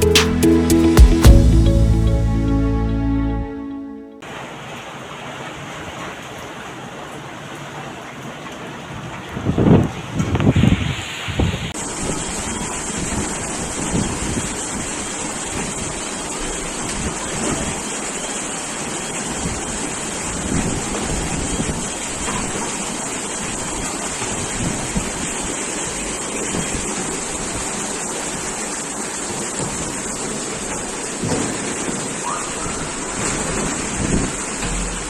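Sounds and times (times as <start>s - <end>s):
wind gusts buffeting microphone: 29.4s - 35.0s.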